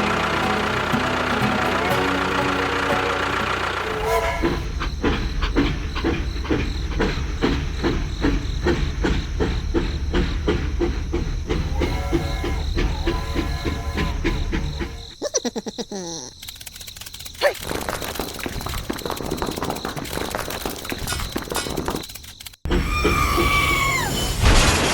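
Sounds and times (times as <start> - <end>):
music: 0.0 - 4.7
short horn-like tones: 0.0 - 4.7, 11.6 - 15.2
rhythmic mechanical clatter: 0.0 - 15.2, 16.4 - 23.0
steady low hum: 0.0 - 15.2.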